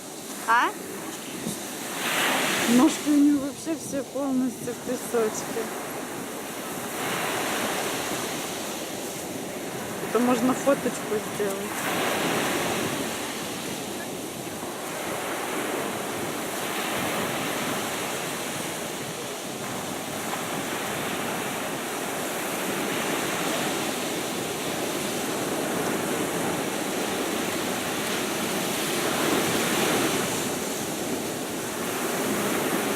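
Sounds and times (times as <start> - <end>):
sea surf washing on shore: 0.0 - 32.9.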